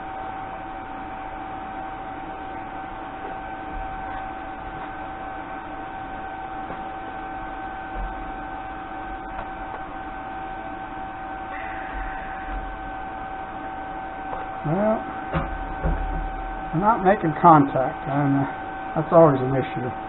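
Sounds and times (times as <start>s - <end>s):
electrical hum with high whine: 0.0s - 20.0s.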